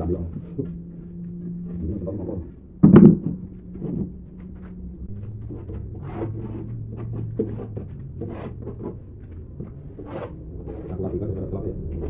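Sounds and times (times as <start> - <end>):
low steady hum: 0.0 - 12.0
knocks and clicks: 2.8 - 11.0.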